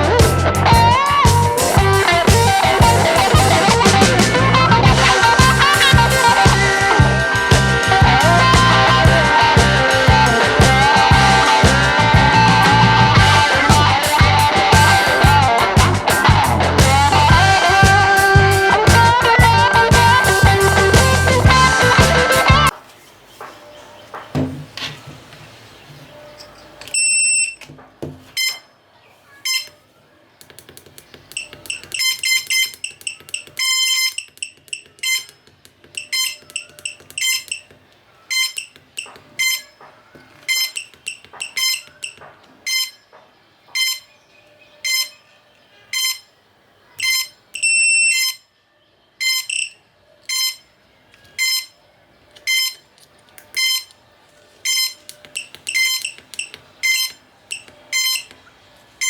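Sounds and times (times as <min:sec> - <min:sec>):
short electronic beeps: 0:26.2 - 0:27.6, 0:28.4 - 0:28.8, 0:29.4 - 0:29.8, 0:31.4 - 0:35.4, 0:36.0 - 0:37.7, 0:38.3 - 0:39.8, 0:40.5 - 0:43.1, 0:43.8 - 0:44.1, 0:44.8 - 0:45.3, 0:45.9 - 0:46.3, 0:47.0 - 0:48.5, 0:49.2 - 0:50.7, 0:51.4 - 0:51.8, 0:52.5 - 0:52.8, 0:53.6 - 0:53.9, 0:54.6 - 0:58.3.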